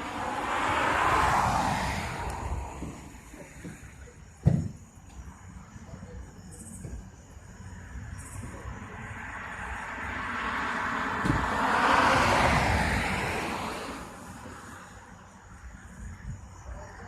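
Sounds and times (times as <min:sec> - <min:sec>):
vehicle passing by: 0:00.0 - 0:03.3, 0:07.8 - 0:16.1.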